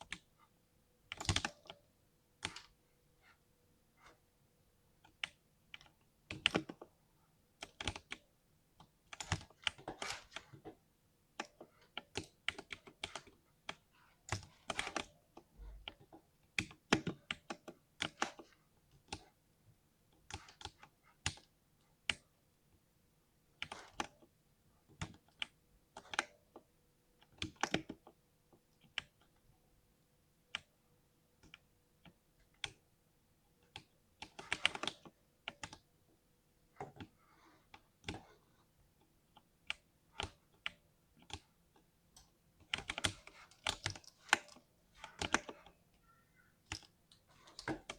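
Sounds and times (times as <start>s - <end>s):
typing on mechanical keyboard: 1.1s - 1.8s, 2.4s - 2.8s, 5.0s - 6.9s, 7.6s - 8.2s, 9.1s - 10.6s, 11.4s - 19.3s, 23.6s - 24.3s, 33.7s - 35.9s, 42.2s - 47.9s.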